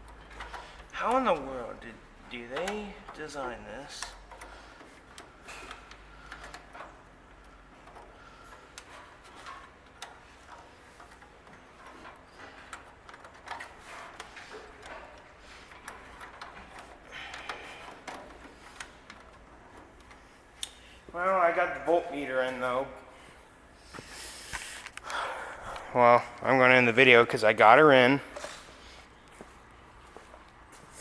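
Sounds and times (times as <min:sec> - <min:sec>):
small clicks and taps: 0:00.0 - 0:21.2.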